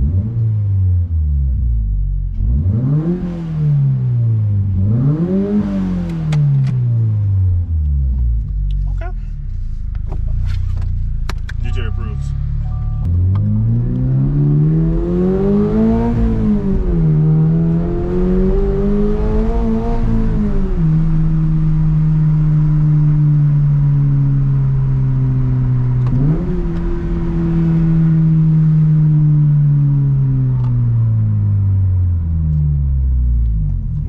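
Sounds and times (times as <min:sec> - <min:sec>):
car engine revving: 0:00.0 - 0:34.0.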